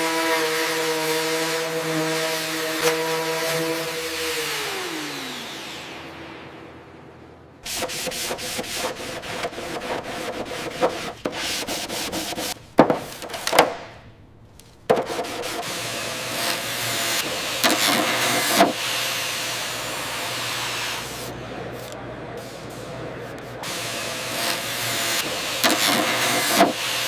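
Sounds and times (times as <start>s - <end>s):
hand sanding strokes: 0.0s - 5.8s, 7.6s - 13.5s, 14.9s - 21.3s, 23.4s - 27.0s
sharp knocks: 7.6s - 15.6s.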